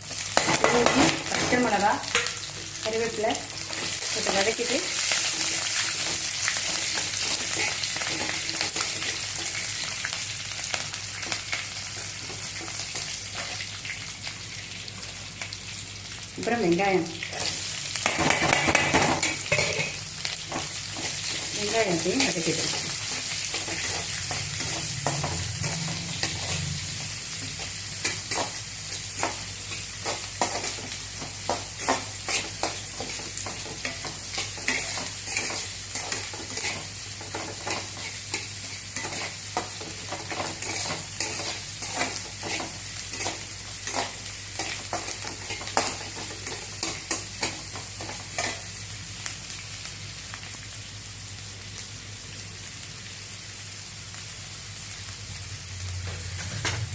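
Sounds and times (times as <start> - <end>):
onions sizzling in oil: 0.0 - 56.9
spoon scraping a pan: 0.2 - 9.6, 17.4 - 26.8, 27.5 - 48.7.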